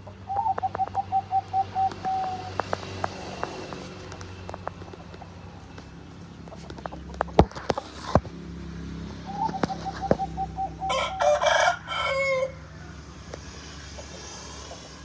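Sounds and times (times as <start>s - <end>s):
rooster crowing: 10.8s - 13.1s.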